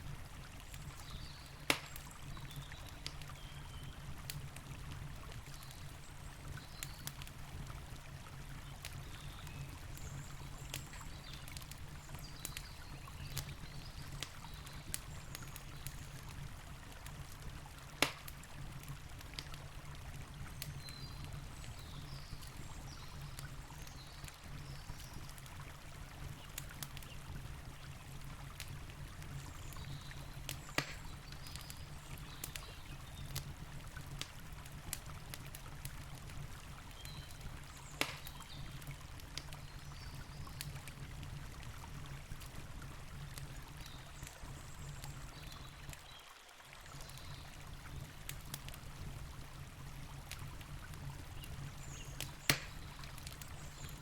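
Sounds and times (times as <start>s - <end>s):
campfire crackling and popping: 0.0s - 54.0s.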